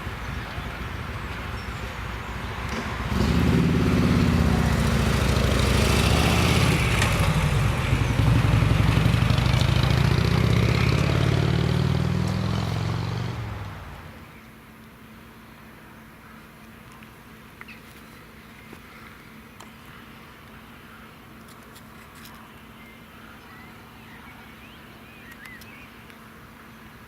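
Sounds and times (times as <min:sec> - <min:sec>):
heavy engine humming: 0:00.0 - 0:21.4.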